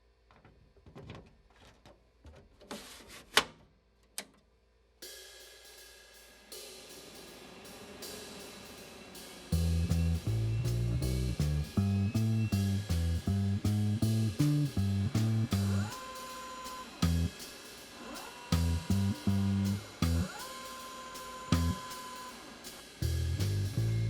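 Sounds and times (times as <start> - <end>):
music with drum beat: 5.0 - 24.0
low bass notes: 9.6 - 15.9, 17.0 - 17.3, 18.6 - 20.3, 21.6 - 21.8, 23.0 - 24.0.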